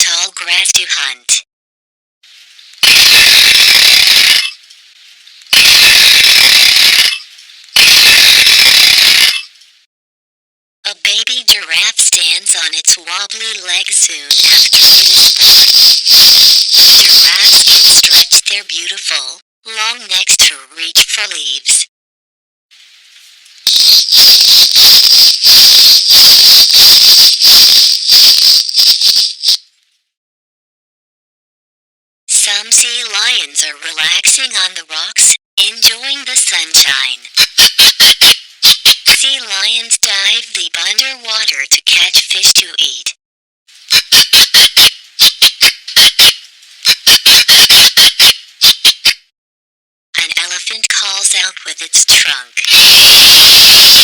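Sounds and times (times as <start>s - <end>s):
harsh distorted sound effect: 2.8s - 4.6s, 5.5s - 7.2s, 7.8s - 9.4s, 14.3s - 18.4s, 23.7s - 29.6s.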